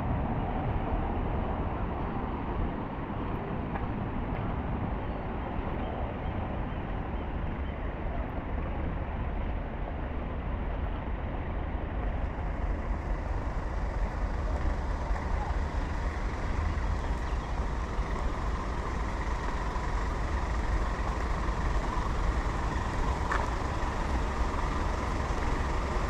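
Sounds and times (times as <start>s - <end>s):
low rumble of vehicles: 0.0s - 26.0s.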